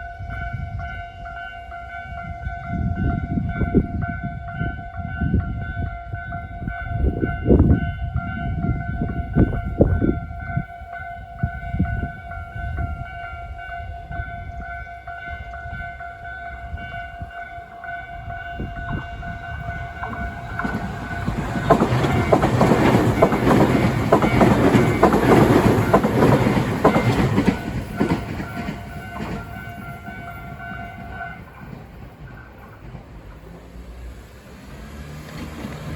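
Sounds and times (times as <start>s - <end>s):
level-crossing alarm ringing: 0.0s - 32.6s
train wheels clicking over rail joints: 17.7s - 35.9s.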